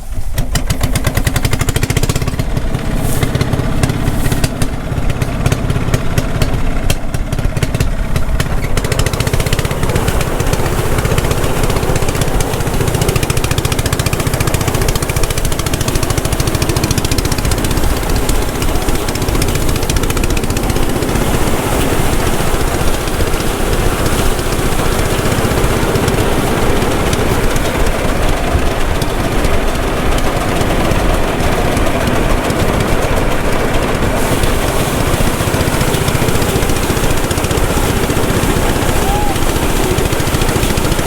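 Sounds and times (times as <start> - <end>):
rice thresher clattering: 0.0 - 41.0.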